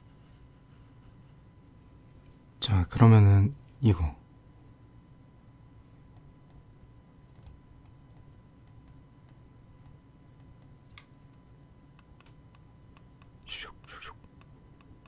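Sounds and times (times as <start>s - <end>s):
computer mouse clicking: 7.3s - 15.0s.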